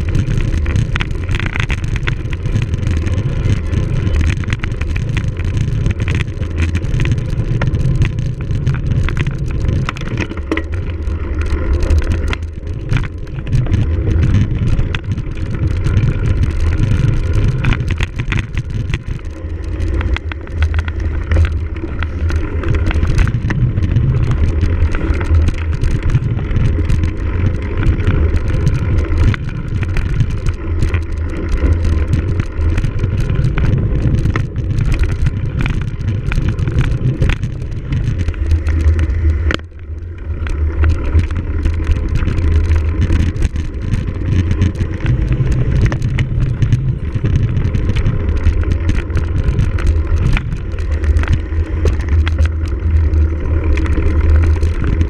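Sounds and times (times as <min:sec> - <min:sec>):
bike rattling and knocking: 0:00.0 - 0:55.0
wind rumble on microphone: 0:00.0 - 0:55.0.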